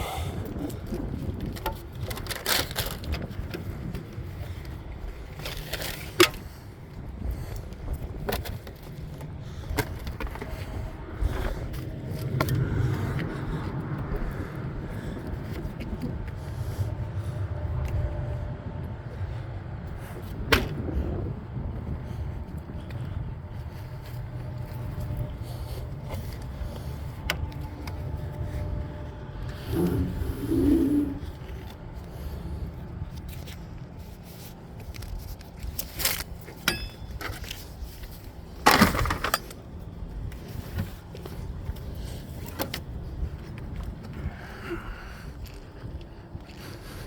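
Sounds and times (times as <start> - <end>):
steady low rumble: 0.0 - 47.0.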